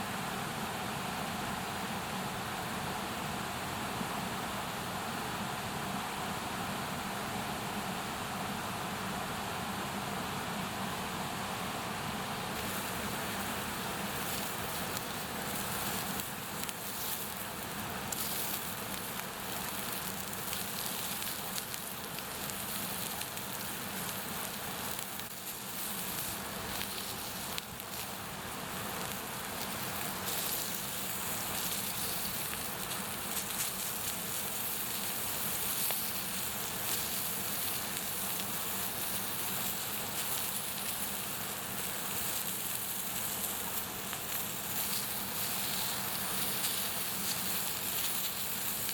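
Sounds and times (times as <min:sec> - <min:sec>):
campfire crackling: 0:12.5 - 0:48.9
sausages sizzling: 0:12.6 - 0:48.9.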